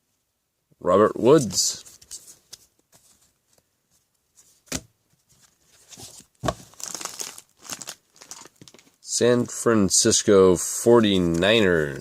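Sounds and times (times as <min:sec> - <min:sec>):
cards rustling: 0:05.4 - 0:09.0, 0:11.0 - 0:12.0.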